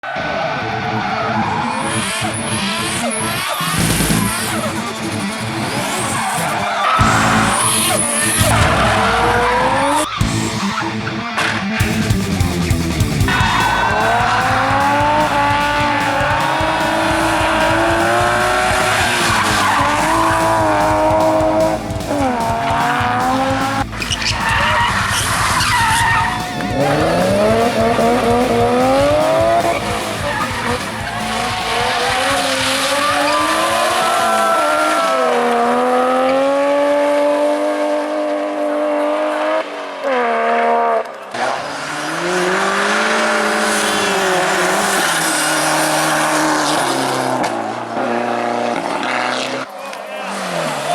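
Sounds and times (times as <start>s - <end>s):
race car engines revving: 0.0s - 50.9s
tyre squeal: 1.0s - 11.9s, 13.3s - 35.6s.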